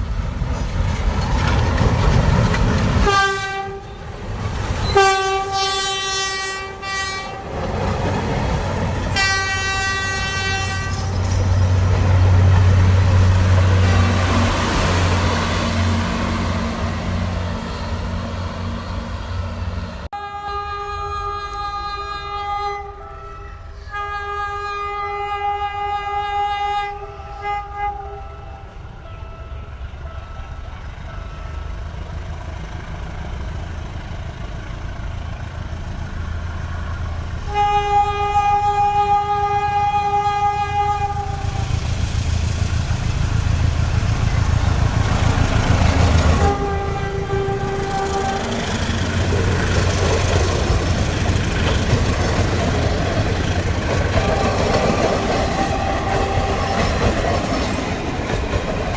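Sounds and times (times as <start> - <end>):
diesel and rail rumble: 0.0 - 58.9
diesel locomotive horn blasts: 3.0 - 4.2, 4.8 - 7.6, 9.1 - 19.3, 20.1 - 31.8, 37.4 - 41.8, 44.3 - 51.7, 54.1 - 57.2.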